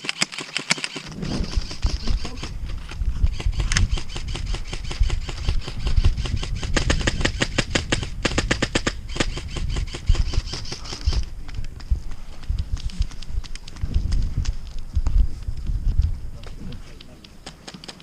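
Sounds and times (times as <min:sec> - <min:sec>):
low thumping rumble: 0:01.1 - 0:03.3.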